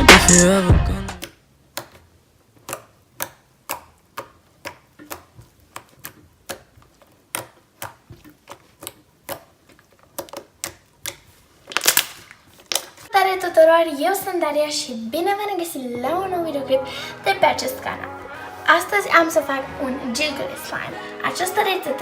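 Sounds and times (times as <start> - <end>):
sharp clicks: 0.1 - 0.6.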